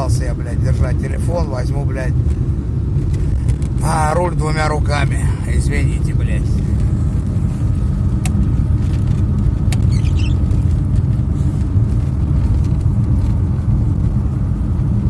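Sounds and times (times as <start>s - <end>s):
vehicle rumble from inside cabin: 0.0s - 15.0s.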